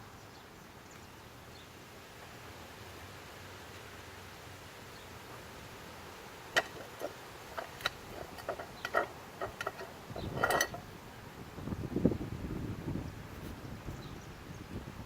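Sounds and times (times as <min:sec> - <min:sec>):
scraping rustle: 0:06.5 - 0:11.0, 0:13.3 - 0:13.6.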